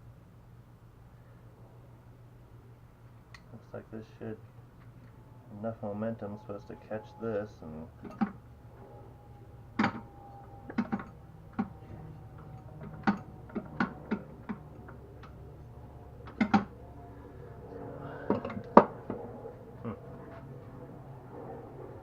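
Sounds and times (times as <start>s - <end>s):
metallic clicks and knocks: 9.8s - 10.1s, 10.7s - 11.8s, 12.4s - 15.4s, 16.2s - 16.7s.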